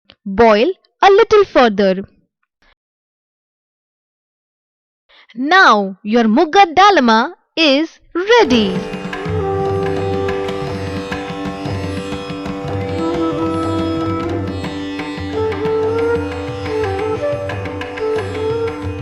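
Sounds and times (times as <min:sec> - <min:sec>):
sitar melody: 0:08.3 - 0:19.0
tabla: 0:08.4 - 0:19.0.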